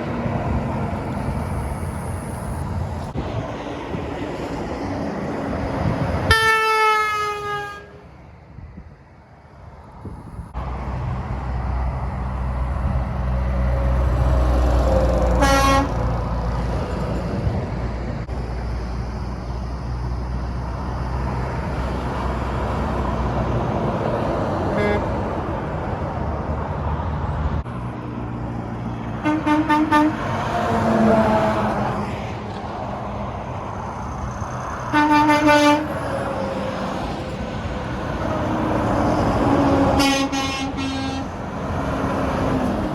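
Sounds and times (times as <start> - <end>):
diesel truck engine rumbling past: 0.0 - 42.9
truck horn blasts: 6.3 - 8.1, 15.4 - 16.1, 24.7 - 25.1, 29.2 - 31.5, 34.9 - 36.0, 39.8 - 41.3.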